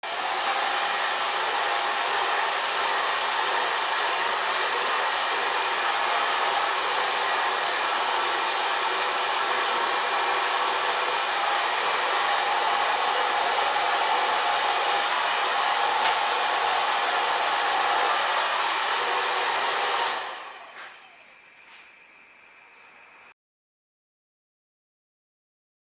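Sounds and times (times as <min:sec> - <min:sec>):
hair dryer blowing: 0:00.0 - 0:21.9.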